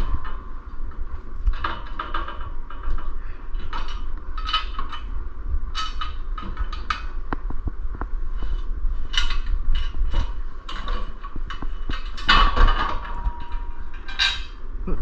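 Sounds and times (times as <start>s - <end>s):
low rumble: 0.0s - 15.0s
metal hardware clinking and scraping: 1.5s - 5.1s, 5.7s - 7.2s, 8.4s - 14.6s.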